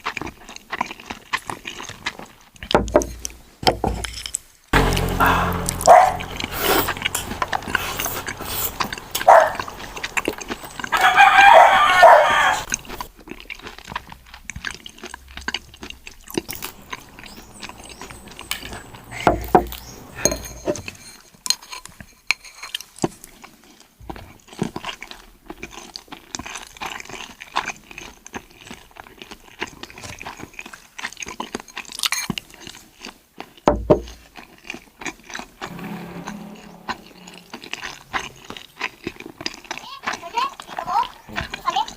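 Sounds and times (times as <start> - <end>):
seafood being chewed and crunched: 0.0 - 2.7, 6.3 - 19.1, 21.5 - 35.6.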